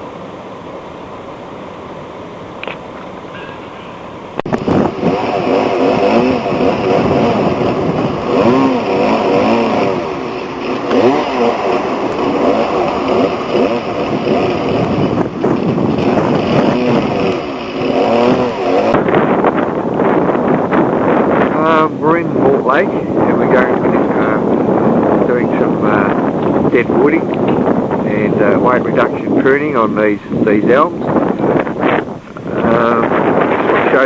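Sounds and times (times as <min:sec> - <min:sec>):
chainsaw engine revving: 0:04.4 - 0:29.8.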